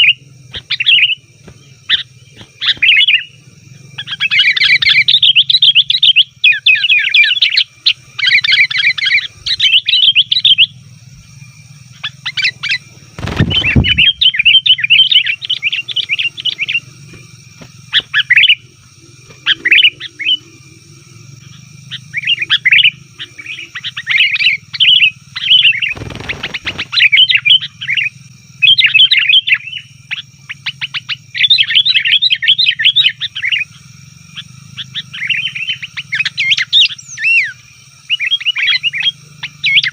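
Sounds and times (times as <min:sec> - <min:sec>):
bulbuls chattering: 0:00.0 - 0:39.9
low thumps: 0:13.1 - 0:14.5.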